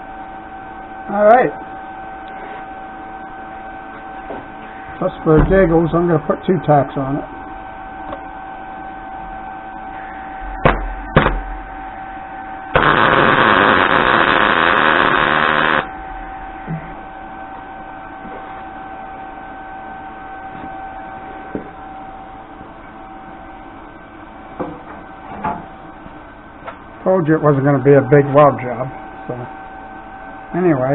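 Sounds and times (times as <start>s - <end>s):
electrical hum: 0.0s - 30.9s
arc welder hissing: 12.7s - 15.9s.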